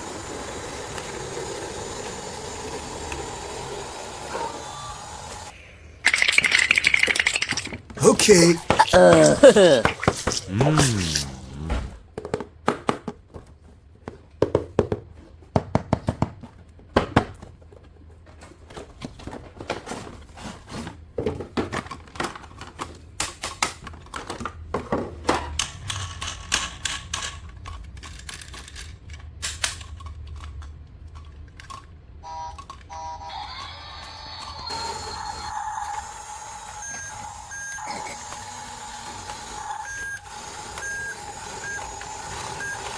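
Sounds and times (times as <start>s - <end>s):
plastic toys clicking and knocking: 6.0s - 11.4s, 21.2s - 32.0s
toy electronic tones: 34.7s - 42.9s.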